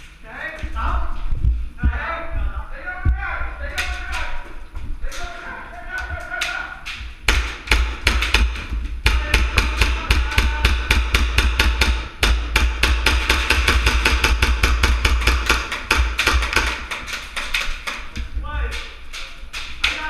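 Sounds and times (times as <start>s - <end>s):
airsoft guns firing: 6.4s - 18.1s.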